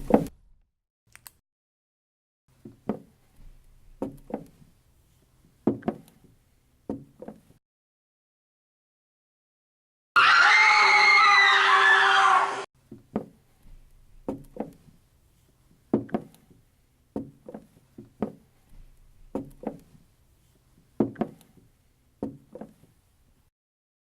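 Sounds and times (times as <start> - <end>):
hollow wooden knocks: 2.6 - 4.6, 5.6 - 7.4, 12.9 - 14.8, 15.9 - 16.6, 17.2 - 19.8, 21.0 - 22.8.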